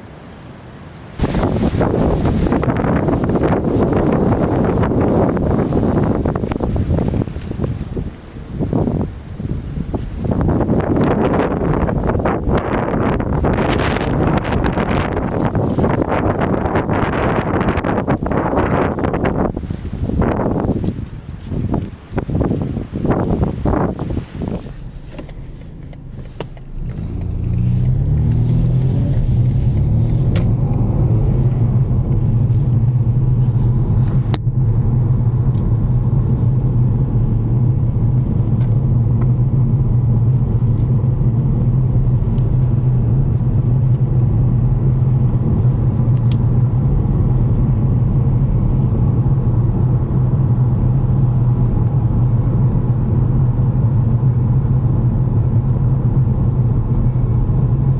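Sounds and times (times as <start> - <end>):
car engine: 0.0 - 57.9
road rumble: 0.0 - 57.9.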